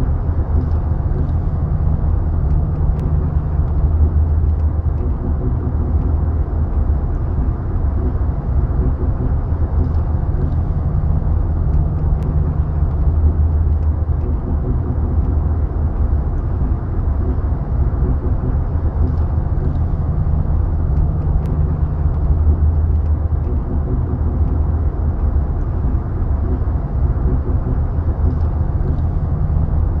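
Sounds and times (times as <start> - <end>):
car rumble with knocking: 0.0 - 30.0.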